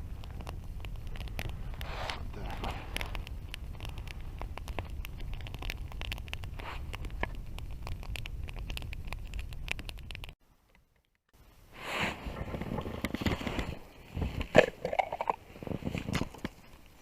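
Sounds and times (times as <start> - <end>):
campfire crackling and popping: 0.0 - 10.4, 12.2 - 17.0
rustling scrape: 1.6 - 3.2, 6.6 - 7.3, 11.8 - 16.7.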